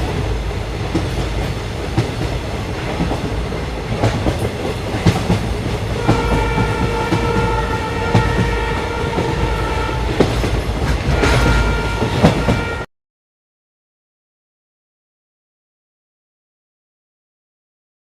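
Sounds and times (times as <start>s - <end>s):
train rumbling on track: 0.0s - 12.9s
train horn: 6.0s - 12.9s.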